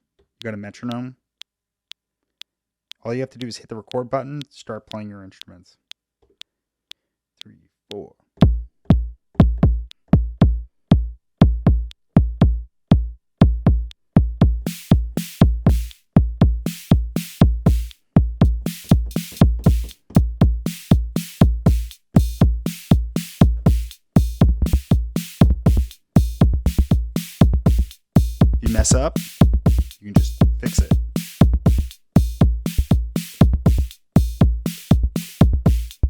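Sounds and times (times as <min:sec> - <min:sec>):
low deep drum hits: 0:14.4 - 0:35.9
bright hissy drum hits: 0:14.7 - 0:16.0, 0:16.7 - 0:17.9, 0:18.5 - 0:36.0.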